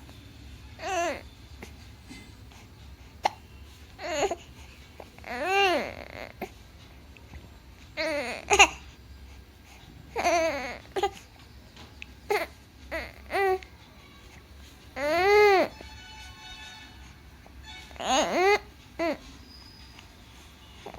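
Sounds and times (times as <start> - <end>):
baby fussing with whiny calls: 4.0 - 4.5, 17.9 - 19.3.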